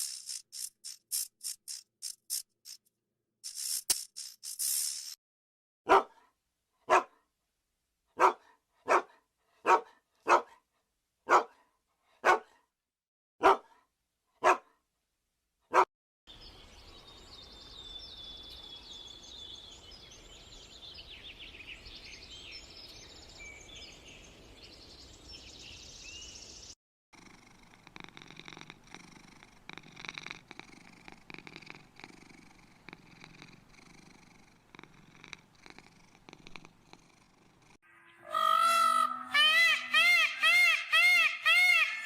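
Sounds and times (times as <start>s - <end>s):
fast high chirping: 0.0s - 2.8s, 3.4s - 5.2s
dog barking: 5.9s - 7.3s, 8.2s - 12.7s, 13.4s - 14.8s, 15.7s - 15.9s.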